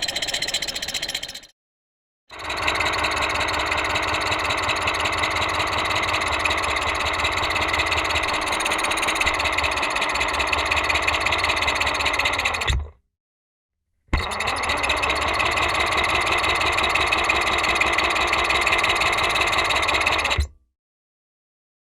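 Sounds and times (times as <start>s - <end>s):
engine running with pulsing rattle: 2.3s - 12.8s, 14.4s - 20.5s.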